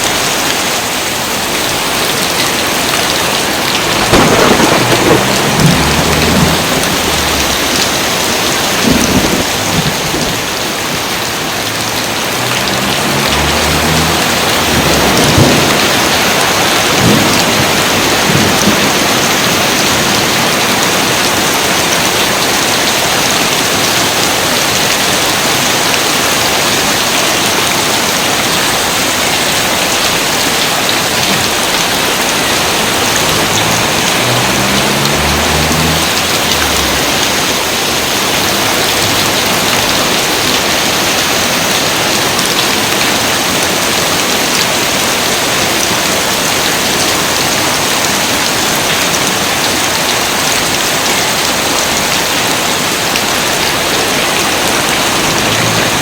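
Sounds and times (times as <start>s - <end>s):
heavy rain: 0.0s - 56.0s
thunder rolling low: 3.3s - 10.4s, 12.5s - 19.1s, 32.5s - 40.2s.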